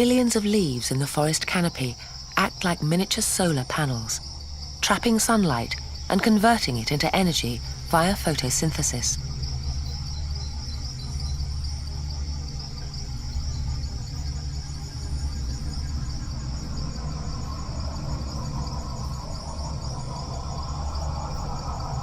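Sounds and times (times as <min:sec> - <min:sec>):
insects chirring: 0:00.0 - 0:22.0
low steady hum: 0:00.0 - 0:22.0.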